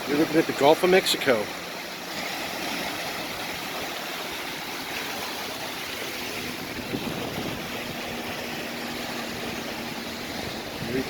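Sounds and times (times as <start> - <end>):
waves washing on beach: 0.0 - 11.0
wind on microphone: 5.5 - 11.0.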